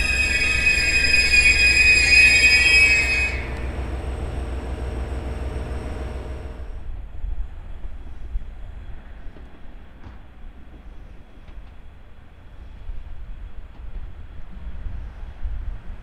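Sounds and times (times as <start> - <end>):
train wheels squealing: 0.0 - 6.8
train rumbling: 0.0 - 16.0.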